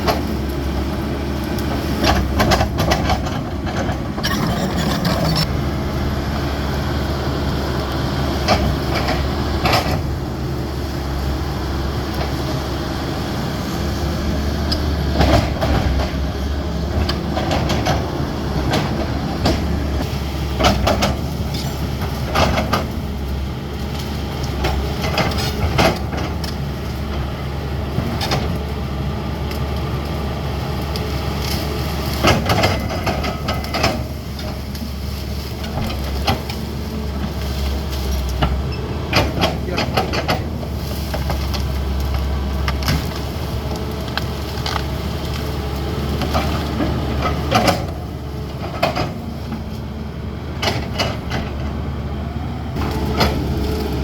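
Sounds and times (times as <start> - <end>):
excavator diesel engine running: 0.0 - 54.0
machine clanks and knocks: 1.9 - 5.5, 15.1 - 19.9, 20.5 - 23.0, 24.0 - 27.2, 32.0 - 34.8, 35.4 - 43.2, 46.1 - 49.6, 50.6 - 51.7.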